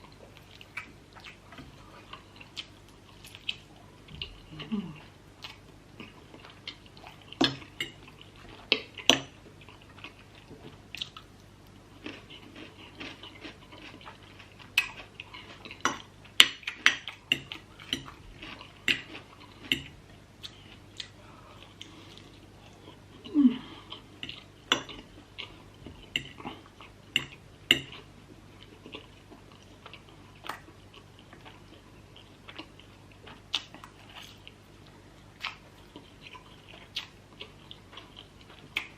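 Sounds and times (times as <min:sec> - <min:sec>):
faint steady hum: 0:00.0 - 0:38.9
chewing noodles: 0:11.9 - 0:38.9.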